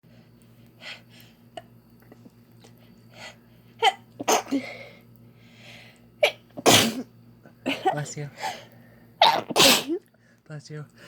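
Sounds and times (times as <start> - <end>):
person sneezing: 6.2 - 7.1, 9.2 - 10.0.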